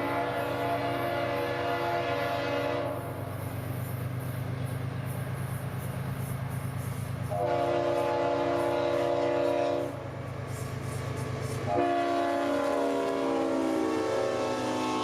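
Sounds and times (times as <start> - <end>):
locomotive air horn: 0.0 - 3.2, 7.3 - 10.0, 11.7 - 15.0
diesel locomotive drone: 0.0 - 15.0.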